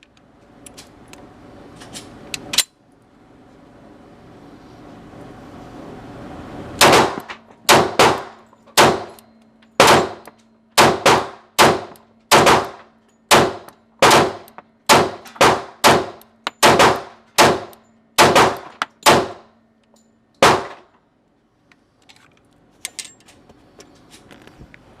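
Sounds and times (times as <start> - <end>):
gunshots with metallic clang: 6.8 - 9.2, 9.8 - 19.5, 20.4 - 20.9.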